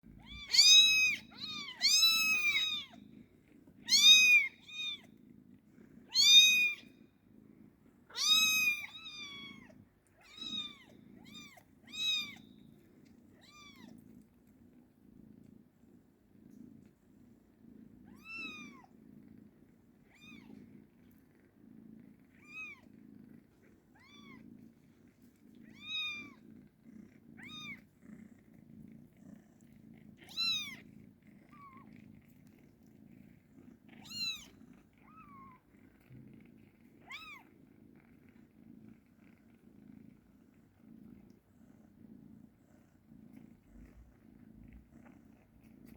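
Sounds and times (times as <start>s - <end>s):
cat purring: 0.0s - 45.9s
kitten meowing: 0.2s - 3.0s, 3.9s - 5.1s, 6.1s - 6.9s, 8.1s - 12.6s, 13.4s - 13.9s, 20.1s - 20.5s, 25.7s - 26.4s, 27.4s - 27.8s, 30.2s - 30.8s, 34.0s - 34.5s.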